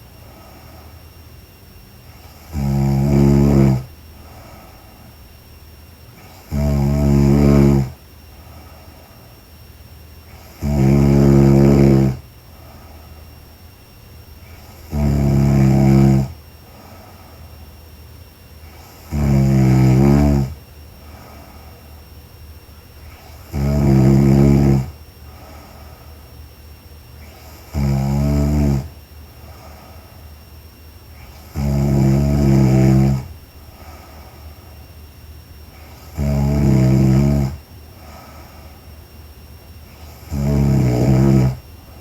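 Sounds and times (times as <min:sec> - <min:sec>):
quiet breathing: 0:00.0 - 0:42.0
woman snoring: 0:02.2 - 0:04.9, 0:06.2 - 0:08.0, 0:10.3 - 0:13.0, 0:14.4 - 0:17.3, 0:18.6 - 0:21.8, 0:23.0 - 0:26.0, 0:27.2 - 0:30.2, 0:31.1 - 0:34.7, 0:35.7 - 0:38.6, 0:39.8 - 0:42.0.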